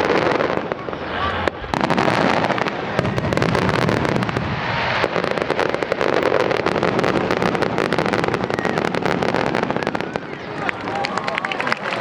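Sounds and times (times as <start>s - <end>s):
fireworks barrage: 0.0s - 12.0s.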